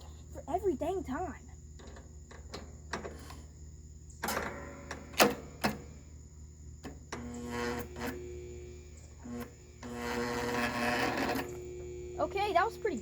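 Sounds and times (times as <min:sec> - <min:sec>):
starter motor whirring: 0:06.8 - 0:13.0.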